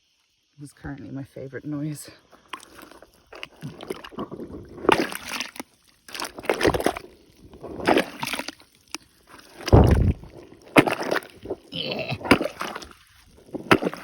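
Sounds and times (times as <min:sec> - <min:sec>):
pole squelching in mud: 0:02.4 - 0:14.0.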